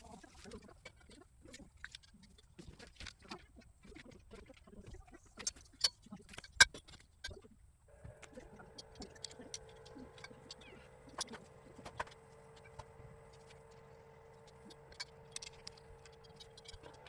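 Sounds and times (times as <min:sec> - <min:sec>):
motor hum: 0:07.9 - 0:17.0
sharp clicks and knocks: 0:08.0 - 0:17.0.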